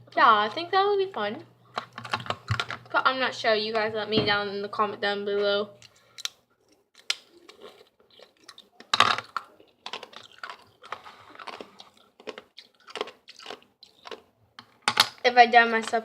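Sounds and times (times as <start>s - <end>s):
ice being chewed: 6.2s - 14.3s.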